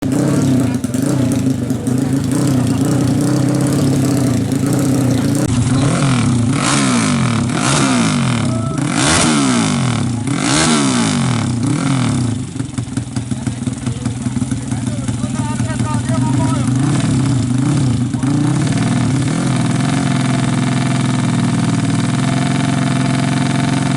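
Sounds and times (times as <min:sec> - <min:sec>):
motorcycle engine revving: 0:00.0 - 0:23.9.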